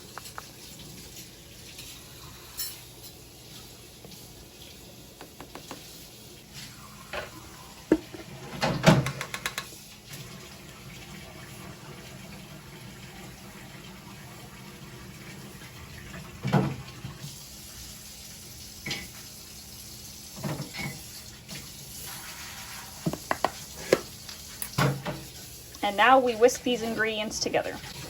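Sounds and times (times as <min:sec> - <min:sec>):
utensils and dishes clinking: 0:01.1 - 0:03.2, 0:20.4 - 0:21.1.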